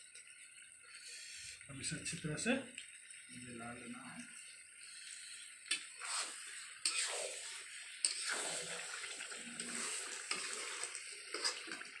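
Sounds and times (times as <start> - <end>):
frying sizzle: 0.0 - 12.0
spatula scraping a pan: 5.2 - 11.9.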